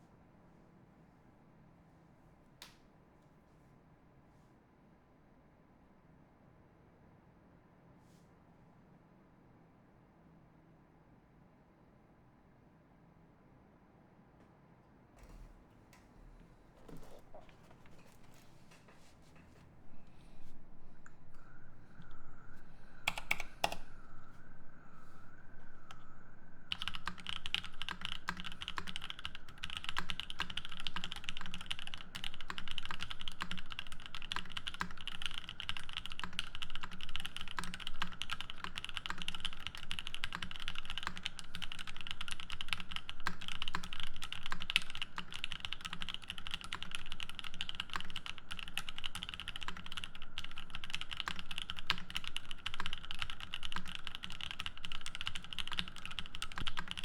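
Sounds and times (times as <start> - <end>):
fast mechanical keyboard typing: 23.0 - 23.8, 26.7 - 57.0.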